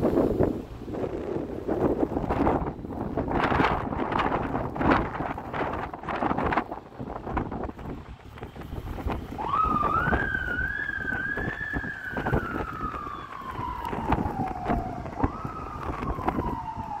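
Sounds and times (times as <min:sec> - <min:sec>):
wind noise on microphone: 0:00.0 - 0:17.0
siren wailing: 0:08.8 - 0:17.0.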